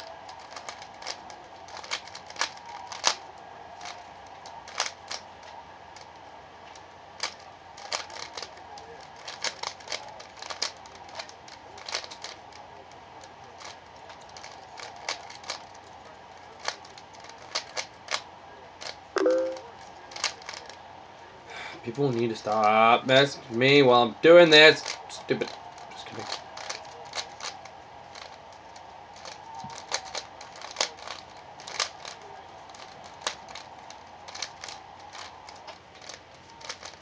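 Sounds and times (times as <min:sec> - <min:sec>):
plastic puzzle cube clicking: 0:00.3 - 0:03.2, 0:03.8 - 0:05.2, 0:07.2 - 0:08.6, 0:09.2 - 0:12.6, 0:13.6 - 0:15.9, 0:16.5 - 0:18.2, 0:18.8 - 0:20.7, 0:24.6 - 0:37.0.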